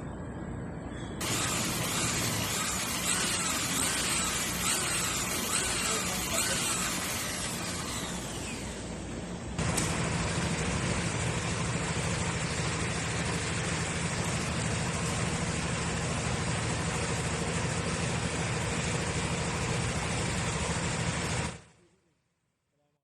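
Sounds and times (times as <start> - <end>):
machine motor whirring: 1.2 - 15.5.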